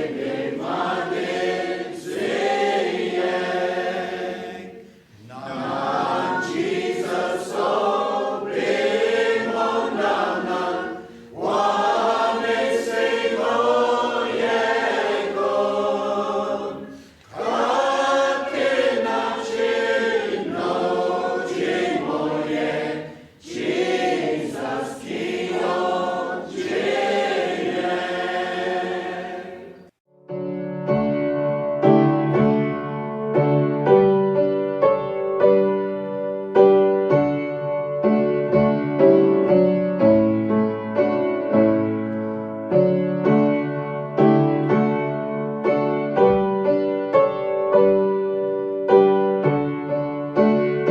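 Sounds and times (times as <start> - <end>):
voices singing a hymn: 0.0 - 30.0.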